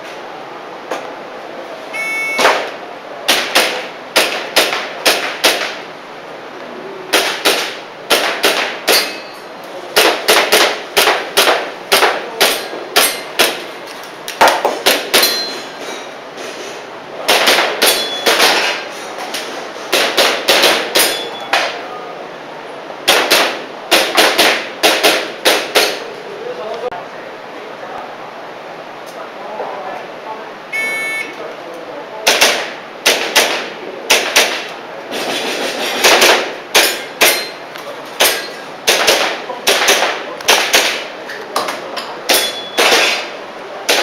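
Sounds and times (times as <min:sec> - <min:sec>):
shot timer beep: 0:01.9 - 0:02.6, 0:30.7 - 0:31.4
airsoft pistol shots: 0:02.4 - 0:05.8, 0:07.1 - 0:09.2, 0:10.0 - 0:13.6, 0:17.3 - 0:18.8, 0:19.9 - 0:21.8, 0:23.1 - 0:26.0, 0:32.2 - 0:34.7, 0:36.0 - 0:37.5, 0:38.2 - 0:41.1, 0:42.3 - 0:43.3.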